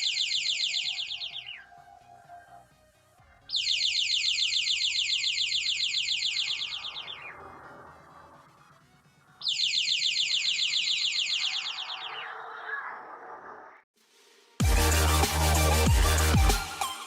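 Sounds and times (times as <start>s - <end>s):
electronic bird chirps: 0.0s - 2.7s, 3.5s - 8.4s, 9.4s - 13.6s.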